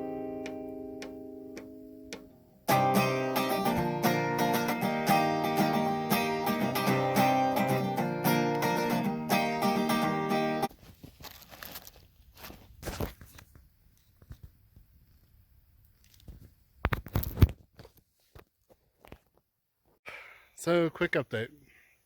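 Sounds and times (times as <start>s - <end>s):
acoustic guitar strummed chords: 0.0s - 10.7s.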